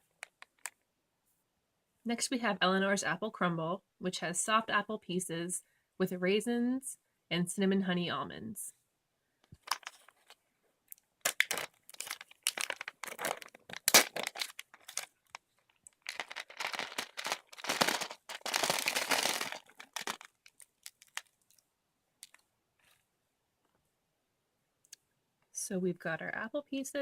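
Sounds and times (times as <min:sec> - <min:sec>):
packaging rustling: 0:09.6 - 0:10.4, 0:11.3 - 0:21.6
snack packaging crinkling and tearing: 0:09.6 - 0:10.4, 0:11.2 - 0:21.6.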